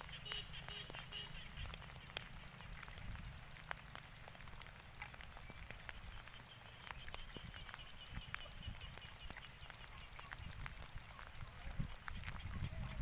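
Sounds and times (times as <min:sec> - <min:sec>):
faint rain drops ticking: 0:00.0 - 0:13.0.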